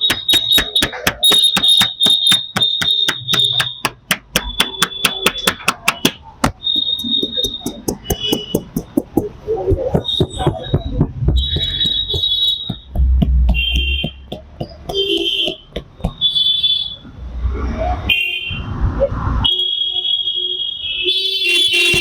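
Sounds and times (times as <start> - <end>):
hands chopping and slapping on body: 0.0 - 6.6, 7.3 - 16.2.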